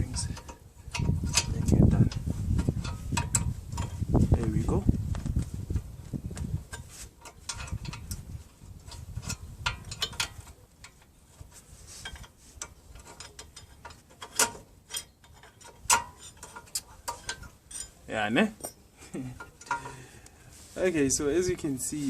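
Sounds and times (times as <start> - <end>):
metallic clicks of brake parts: 0.0 - 4.0, 6.7 - 8.2, 8.9 - 11.2, 12.0 - 18.0, 18.6 - 20.4.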